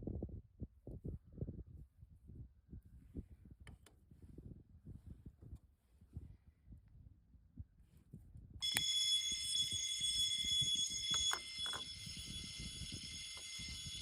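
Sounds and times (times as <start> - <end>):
toy fire alarm ringing: 8.6 - 14.0.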